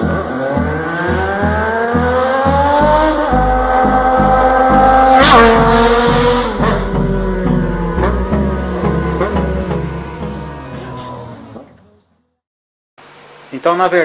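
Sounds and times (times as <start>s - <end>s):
music with steady beat: 0.0s - 11.2s
engine revving sound effect: 0.0s - 12.0s.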